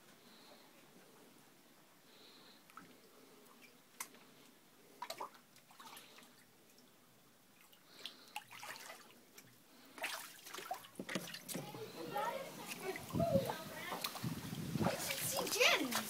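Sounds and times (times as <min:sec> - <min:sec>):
water dripping: 0:02.7 - 0:16.0
floodwater splashing: 0:07.6 - 0:16.0.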